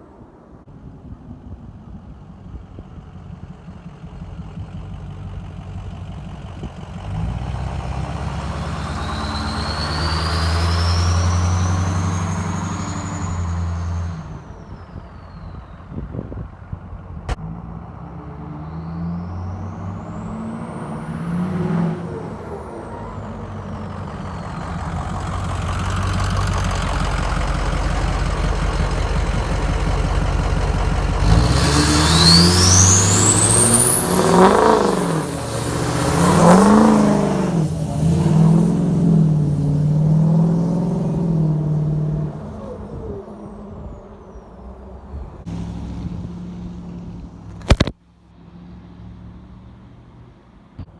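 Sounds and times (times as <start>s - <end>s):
diesel engine revving: 2.9s - 50.9s
high turbo whistle: 8.6s - 14.8s, 31.5s - 40.4s.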